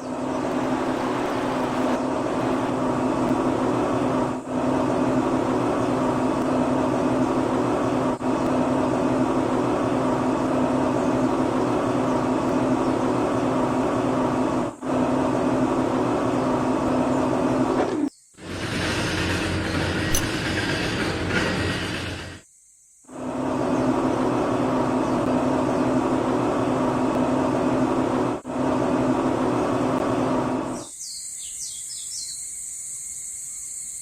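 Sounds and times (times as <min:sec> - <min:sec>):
small electric motor humming: 0:00.0 - 0:17.8.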